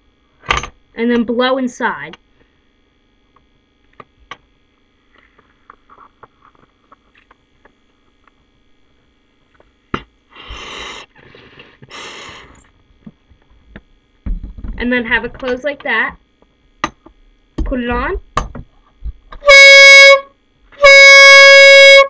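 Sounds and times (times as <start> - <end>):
person blowing into air horn: 19.4 - 22.0.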